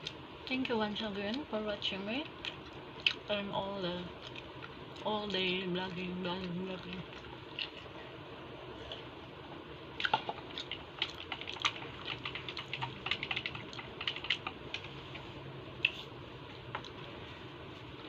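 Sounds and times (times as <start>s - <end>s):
clicks and taps of eating: 10.0s - 15.2s, 15.8s - 17.1s.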